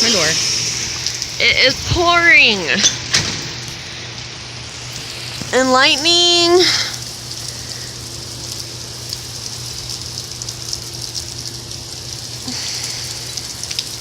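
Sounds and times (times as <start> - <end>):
heavy rain pouring: 0.0 - 14.0
close drops ticking: 13.0 - 14.0.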